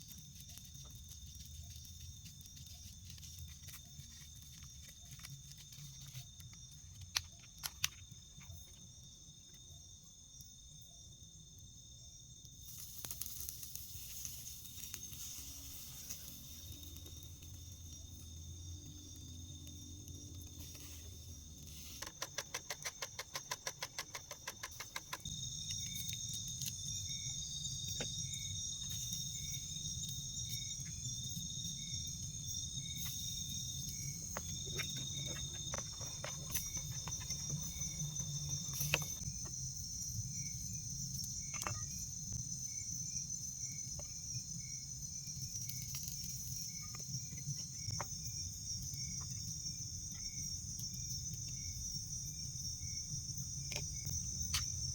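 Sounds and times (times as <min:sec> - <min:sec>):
insects and crickets trilling: 0:00.0 - 0:54.9
fast loud clicks: 0:21.9 - 0:25.3.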